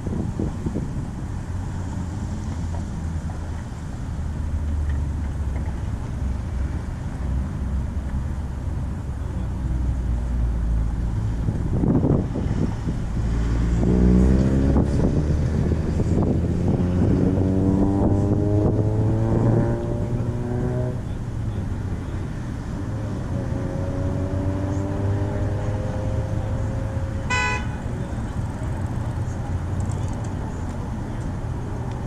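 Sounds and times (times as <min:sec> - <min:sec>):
low traffic rumble: 0:00.0 - 0:32.0
vehicles accelerating: 0:00.0 - 0:32.0.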